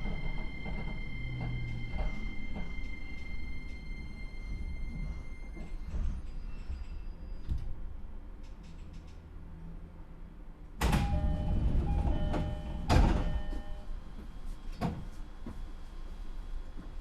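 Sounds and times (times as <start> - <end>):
train doors sliding shut: 0.0 - 7.8, 10.8 - 13.8.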